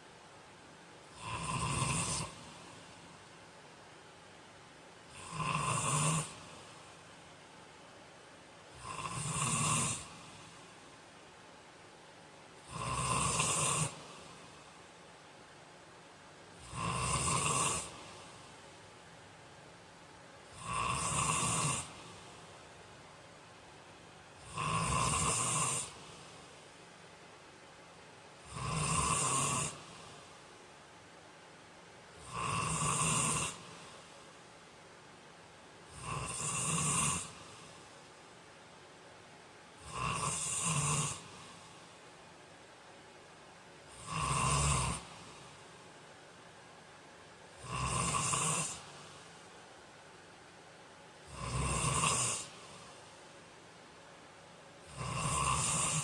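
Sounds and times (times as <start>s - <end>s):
man snoring: 1.1s - 2.8s, 5.1s - 6.8s, 8.7s - 10.5s, 12.6s - 14.4s, 16.6s - 18.4s, 20.5s - 22.3s, 24.4s - 26.4s, 28.4s - 30.3s, 32.2s - 34.1s, 35.9s - 37.9s, 39.8s - 41.6s, 43.9s - 45.5s, 47.6s - 49.2s, 51.2s - 53.0s, 54.8s - 56.0s.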